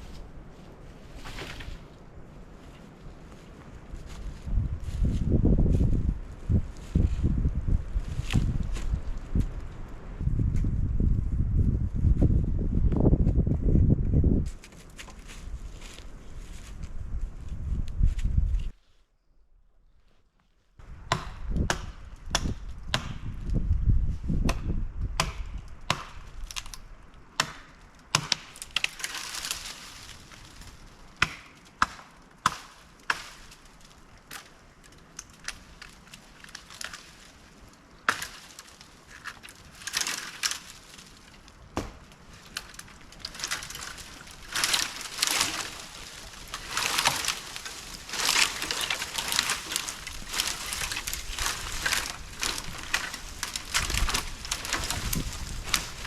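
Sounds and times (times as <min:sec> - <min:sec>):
rustling brushy noise: 0:00.0 - 0:56.0
wood being chopped: 0:21.1 - 0:23.4, 0:24.4 - 0:26.7, 0:27.4 - 0:29.7, 0:31.2 - 0:33.6, 0:38.0 - 0:40.8, 0:41.7 - 0:56.0.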